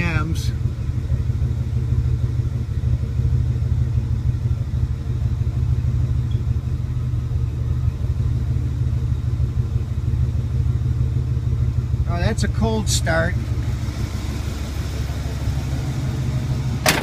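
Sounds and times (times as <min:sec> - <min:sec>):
car engine idling roughly: 0:00.0 - 0:17.0.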